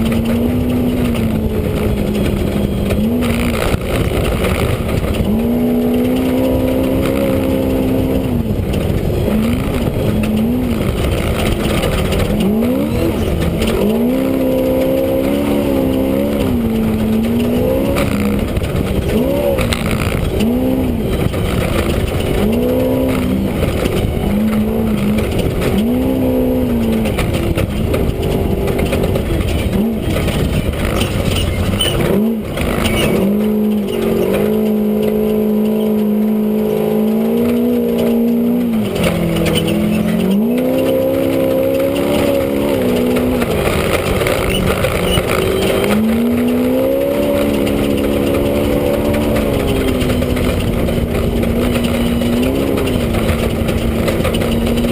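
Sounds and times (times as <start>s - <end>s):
race car engine revving: 0.0s - 54.9s
rumble and clatter of ride: 0.0s - 54.9s.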